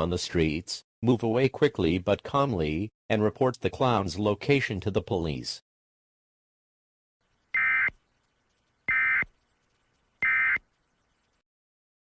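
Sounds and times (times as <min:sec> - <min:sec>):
digital data burst screeches: 0:07.6 - 0:07.9, 0:08.9 - 0:09.2, 0:10.2 - 0:10.6.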